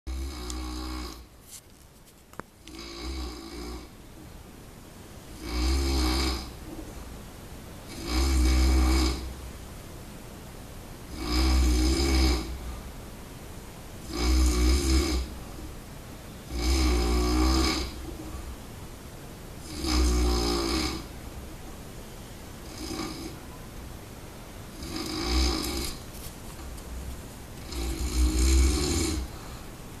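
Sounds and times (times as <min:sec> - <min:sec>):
person snoring: 0:00.1 - 0:01.3, 0:02.7 - 0:03.9, 0:05.3 - 0:06.6, 0:07.9 - 0:09.3, 0:11.1 - 0:12.7, 0:14.0 - 0:15.4, 0:16.5 - 0:18.5, 0:19.6 - 0:21.1, 0:22.6 - 0:23.4, 0:24.7 - 0:26.0, 0:27.6 - 0:29.6
quiet breathing: 0:12.5 - 0:13.1, 0:17.8 - 0:18.8, 0:27.6 - 0:30.0.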